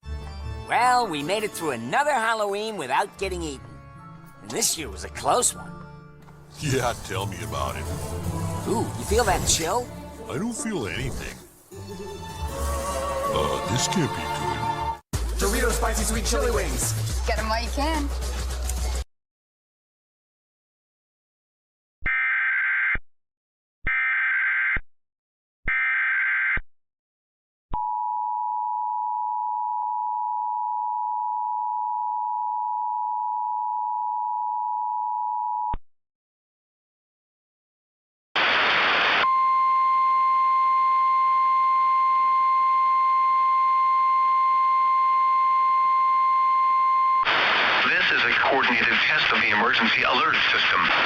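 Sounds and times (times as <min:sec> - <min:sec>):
burst of static: 0:38.4 - 0:39.3, 0:47.2 - 0:51.0
single-tone warning alarm: 0:39.2 - 0:47.3.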